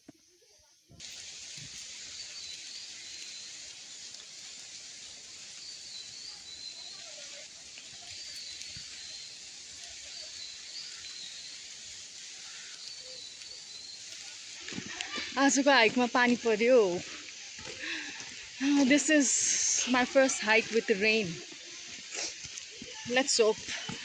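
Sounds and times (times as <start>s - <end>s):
steady high hiss: 0.0s - 24.0s
bird warbling call: 1.0s - 14.6s.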